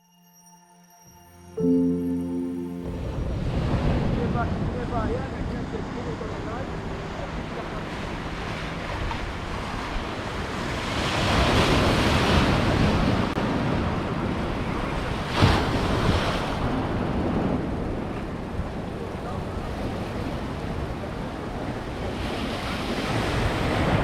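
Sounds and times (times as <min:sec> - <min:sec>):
wave crash: 0:01.6 - 0:18.4
surf breaking on shore: 0:02.8 - 0:24.0
wind on microphone: 0:02.9 - 0:24.0.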